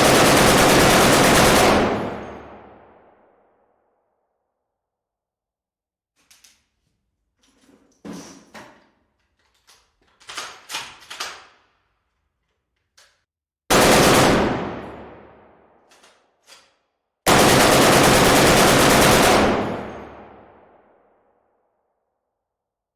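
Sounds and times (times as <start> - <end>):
heavy machine gun bursts: 0.0 - 2.5, 13.7 - 14.7, 17.3 - 20.2.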